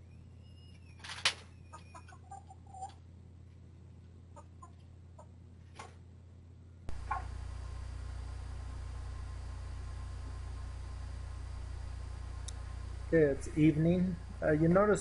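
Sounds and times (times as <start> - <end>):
low steady hum: 0.0 - 15.0
hens clucking: 1.7 - 3.0, 4.3 - 5.4, 6.9 - 7.4.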